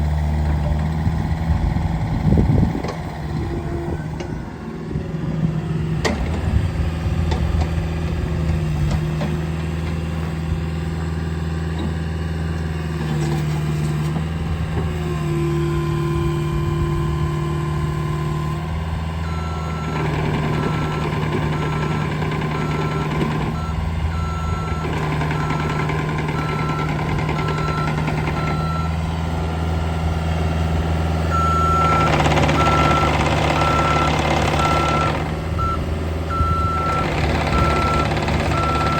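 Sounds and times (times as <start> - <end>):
excavator diesel engine running: 0.0 - 38.9
excavator alarm beeping: 15.3 - 29.0, 31.3 - 38.9.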